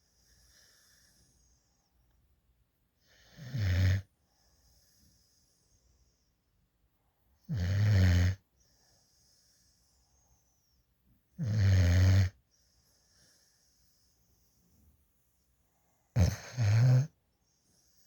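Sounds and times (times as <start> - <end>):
faint breathing: 0.0 - 2.2, 4.1 - 6.5, 8.5 - 10.9, 12.4 - 18.0
puppy snoring: 3.1 - 4.1, 7.4 - 8.4, 11.4 - 12.4, 16.1 - 17.2.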